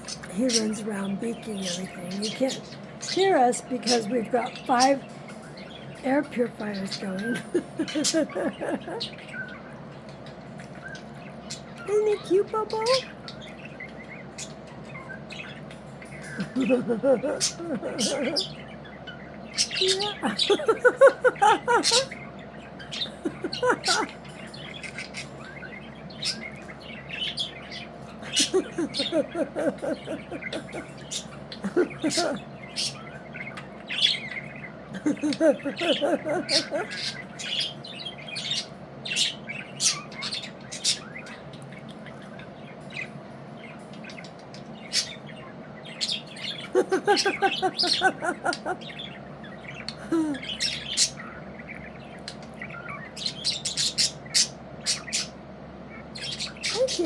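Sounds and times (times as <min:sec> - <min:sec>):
budgerigars chattering and chirping: 0:00.0 - 0:57.0
budgerigar chattering: 0:06.0 - 0:09.4, 0:16.2 - 0:18.6, 0:19.5 - 0:22.2, 0:22.9 - 0:25.4, 0:26.2 - 0:33.1, 0:35.0 - 0:41.2, 0:45.9 - 0:49.2.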